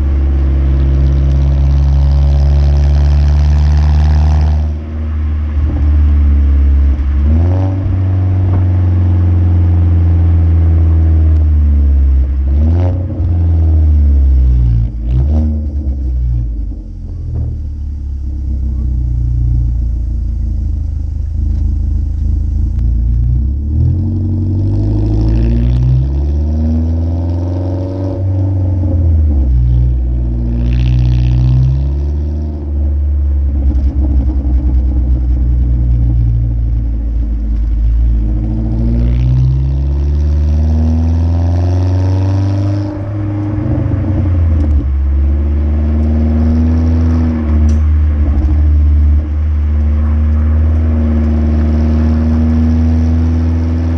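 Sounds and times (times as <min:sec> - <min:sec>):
car engine accelerating: 0:00.0 - 0:53.9
exhaust crackles and pops: 0:00.0 - 0:53.9.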